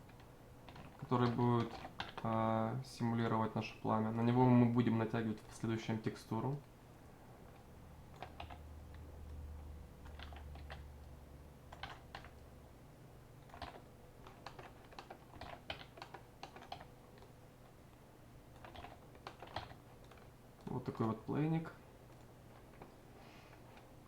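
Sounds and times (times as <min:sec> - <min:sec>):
keyboard and mouse clicks: 0:00.0 - 0:02.5, 0:07.5 - 0:09.4, 0:10.0 - 0:12.4, 0:13.4 - 0:17.4, 0:18.5 - 0:21.3, 0:22.1 - 0:23.9
low steady hum: 0:00.0 - 0:24.0.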